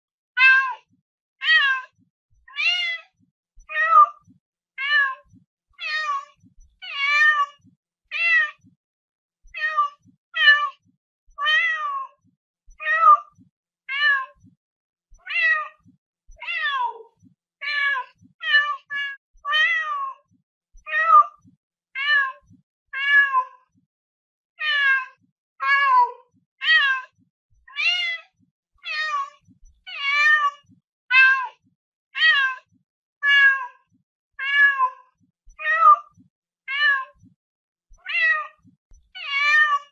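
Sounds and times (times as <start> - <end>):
cat meowing: 1.4 - 1.9, 4.8 - 8.6, 9.6 - 10.7, 15.2 - 15.8, 23.0 - 23.4, 24.6 - 27.1, 29.9 - 31.5, 32.2 - 32.6, 33.2 - 33.6, 34.4 - 34.9, 36.7 - 37.2, 38.0 - 38.6, 39.2 - 39.9.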